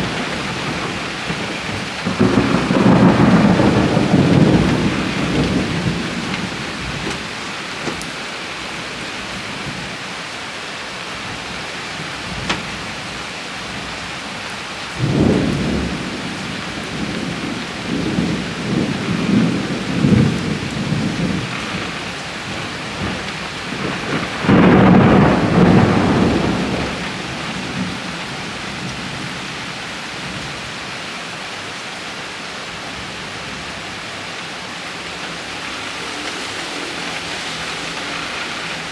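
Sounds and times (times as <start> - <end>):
rolling thunder: 0.0 - 8.1, 14.9 - 29.4
heavy rain: 0.0 - 38.9.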